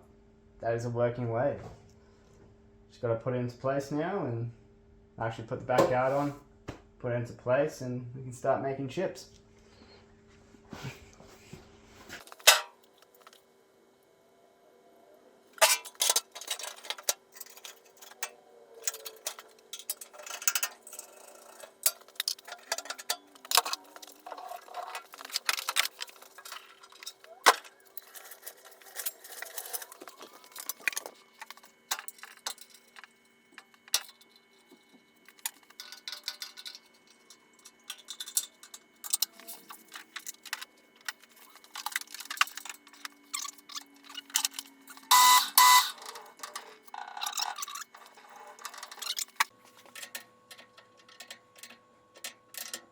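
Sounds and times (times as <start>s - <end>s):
faint steady hum: 0.0s - 52.9s
metal tools clinking and clattering: 12.2s - 13.4s, 15.6s - 52.8s.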